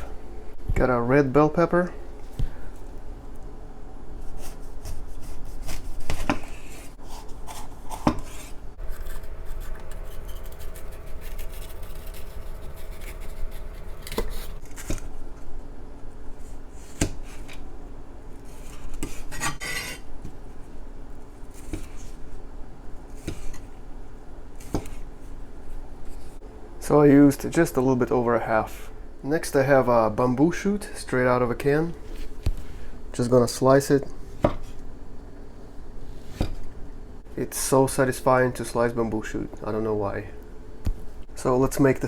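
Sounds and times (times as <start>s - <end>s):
rubbing and handling: 4.2s - 15.0s.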